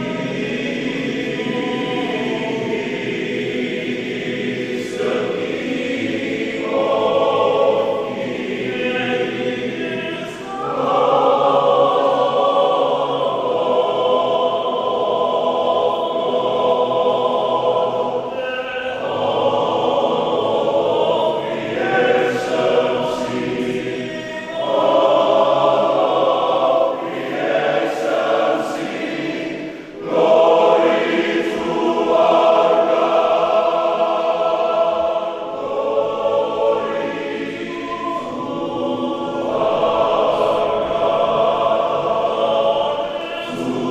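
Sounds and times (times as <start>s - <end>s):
men's choir singing: 0.0s - 43.9s.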